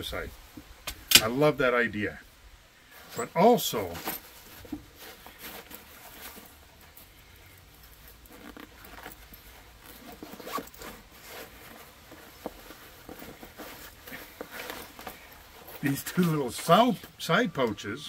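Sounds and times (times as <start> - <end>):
fabric handling: 2.9 - 17.3
zipper pulls: 4.9 - 16.3.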